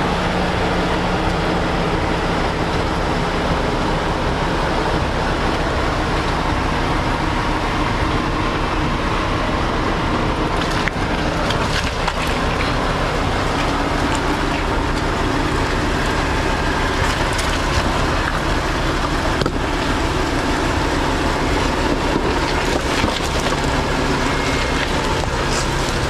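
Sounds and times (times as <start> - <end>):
engine and tyre noise: 0.0 - 26.0
rocks knocking under tyres: 10.5 - 26.0.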